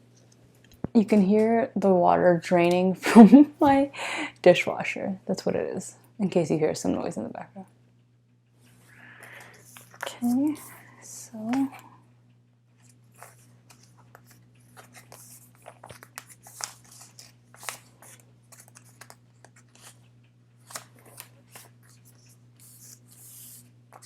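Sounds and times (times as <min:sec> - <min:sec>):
plastic sleeves crinkling and rustling: 0:12.8 - 0:20.0.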